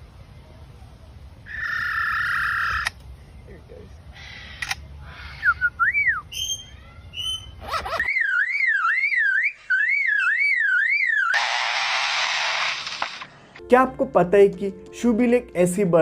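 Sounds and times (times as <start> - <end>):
lyrebird whistles and chirps: 5.2 - 9.4
lyrebird warbling whistle: 5.2 - 11.4.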